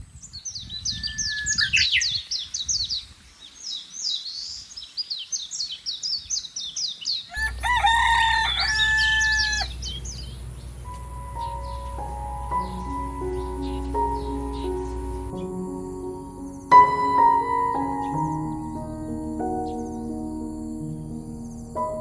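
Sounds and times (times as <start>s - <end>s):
small birds chirping: 0.0s - 22.0s
rooster crowing: 7.3s - 10.2s
low steady rumble: 7.5s - 16.4s.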